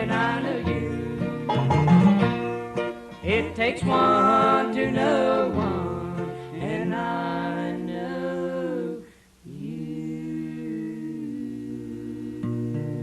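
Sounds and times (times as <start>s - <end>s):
unaccompanied vocal harmony: 0.0s - 1.7s, 3.2s - 13.0s
plucked strings: 0.0s - 7.9s.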